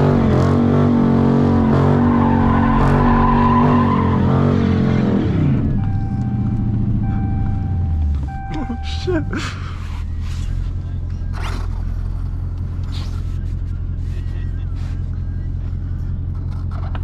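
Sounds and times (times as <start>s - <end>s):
car engine revving: 0.0s - 17.0s
tire squeal: 1.5s - 6.5s.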